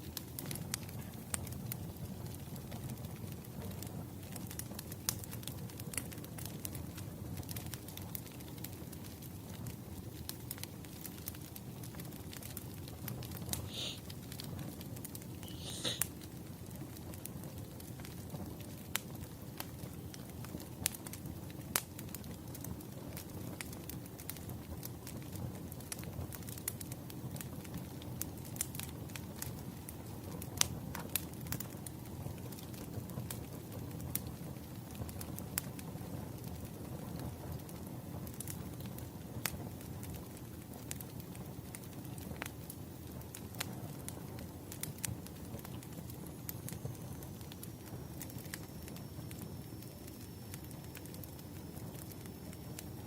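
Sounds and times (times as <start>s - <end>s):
firewood crackling: 0.0s - 53.0s
sharp pops of fire: 0.0s - 53.0s
faint high whine: 46.2s - 53.0s.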